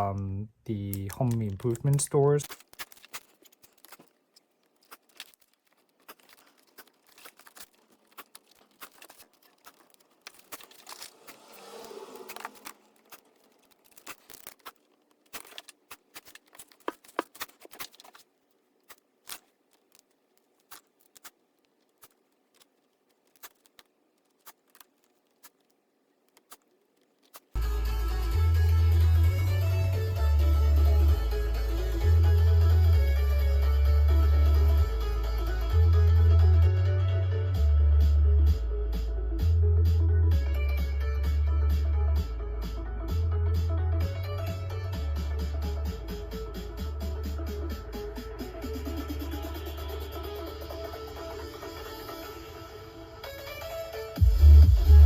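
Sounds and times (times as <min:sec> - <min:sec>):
foam rustling scrape: 0:02.2 - 0:25.7.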